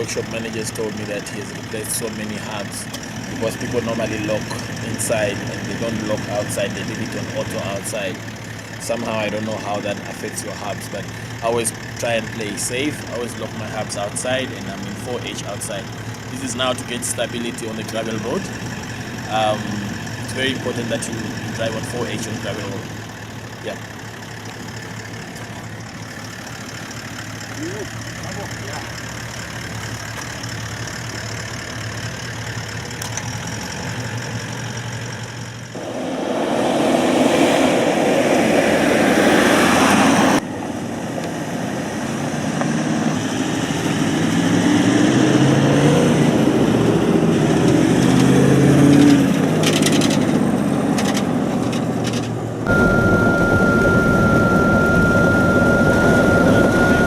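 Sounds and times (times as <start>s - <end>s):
vehicle engine: 0.0s - 57.0s
tyres on gravel: 20.4s - 36.0s
steady high tone: 35.8s - 40.4s, 52.7s - 57.0s.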